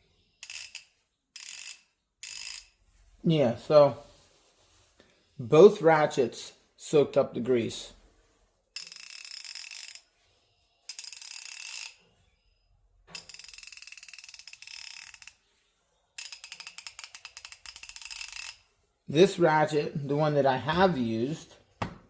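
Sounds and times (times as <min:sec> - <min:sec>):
ratchet pawls clicking rapidly: 0:00.4 - 0:02.7, 0:08.8 - 0:10.0, 0:10.9 - 0:12.0, 0:13.2 - 0:15.4, 0:16.2 - 0:18.6.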